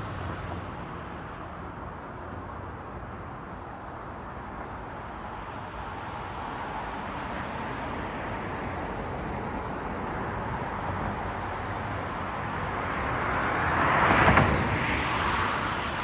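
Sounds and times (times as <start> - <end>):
passing cars tyre hiss: 7.6 - 11.6, 12.8 - 16.0.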